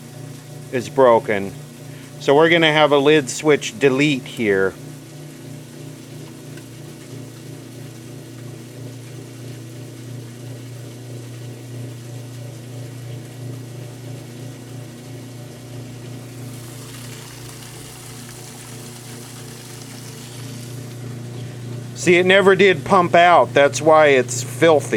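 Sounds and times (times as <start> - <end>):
washing machine motor and pump hum: 0.0 - 24.9
water rushing: 16.2 - 21.0.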